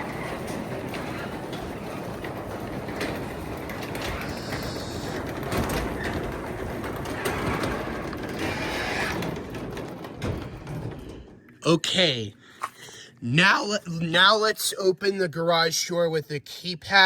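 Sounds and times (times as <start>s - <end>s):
garage door rolling rattle: 0.0s - 11.6s.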